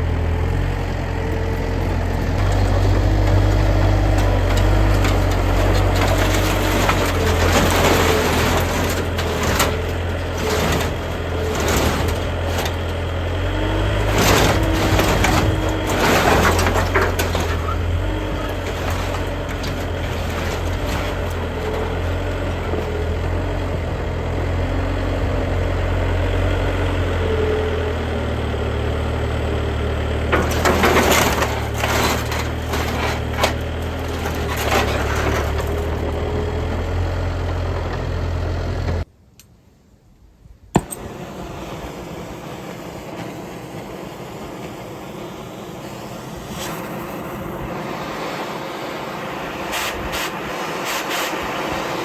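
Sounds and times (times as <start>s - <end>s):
engine running: 0.0s - 39.1s, 40.8s - 52.0s
loud knocks and clatters: 2.0s - 23.8s, 30.3s - 36.2s.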